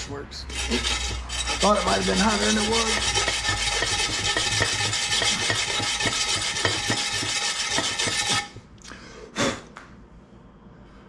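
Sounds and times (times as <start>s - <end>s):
wire brush scrubbing metal rim: 0.5s - 8.6s.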